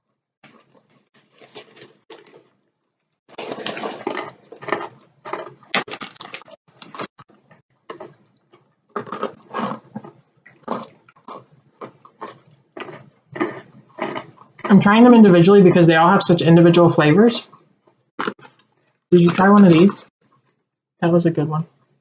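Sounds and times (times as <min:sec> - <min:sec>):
snacks crinkling and crunching: 0:00.4 - 0:14.8, 0:17.4 - 0:20.6.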